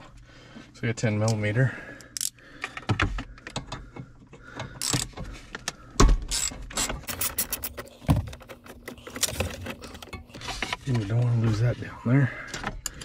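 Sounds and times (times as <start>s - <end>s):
ratchet clicking: 4.8s - 5.1s, 6.3s - 7.8s.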